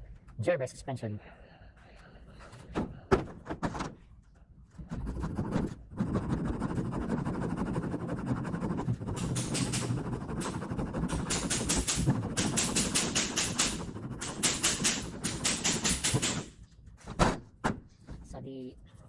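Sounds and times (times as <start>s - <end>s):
small saw rasping through wood: 6.0s - 16.1s.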